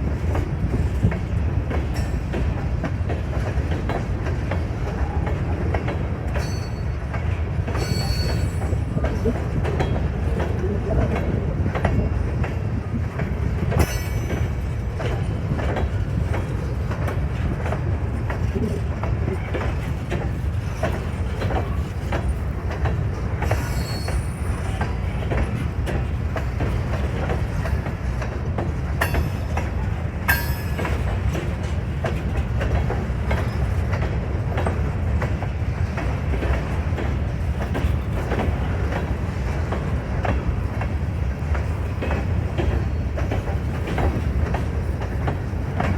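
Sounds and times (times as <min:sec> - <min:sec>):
train cars rumbling past: 0:00.0 - 0:45.9
wheels clacking over rail joints: 0:00.1 - 0:45.9
high wheel squeals: 0:23.6 - 0:24.8.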